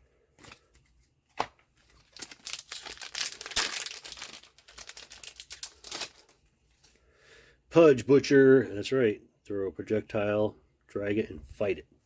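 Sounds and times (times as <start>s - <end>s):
wrapper tearing and crinkling: 1.9s - 6.4s.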